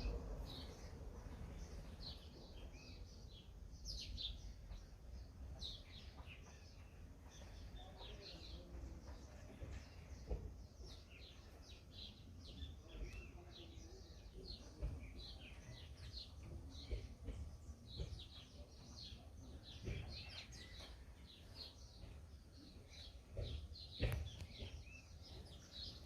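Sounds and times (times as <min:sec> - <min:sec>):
small birds chirping: 0:00.0 - 0:26.0
soft knocks: 0:23.2 - 0:25.8.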